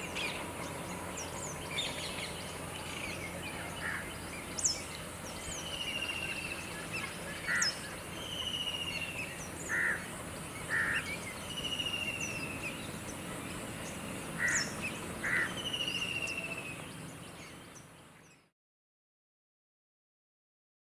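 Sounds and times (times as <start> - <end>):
birds calling: 0.0 - 18.5.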